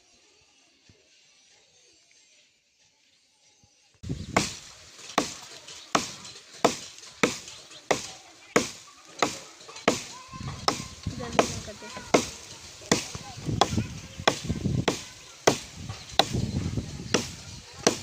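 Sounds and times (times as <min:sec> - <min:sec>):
heavy strikes: 0:04.3 - 0:18.0.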